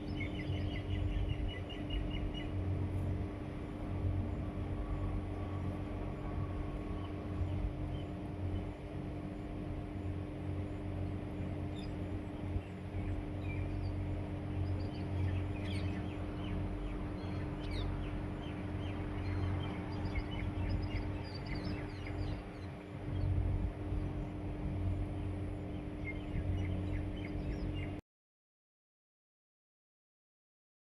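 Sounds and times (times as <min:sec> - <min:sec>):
sparrows chirping: 0:00.0 - 0:02.8, 0:06.1 - 0:09.0, 0:10.0 - 0:28.0
low hum: 0:00.0 - 0:28.0.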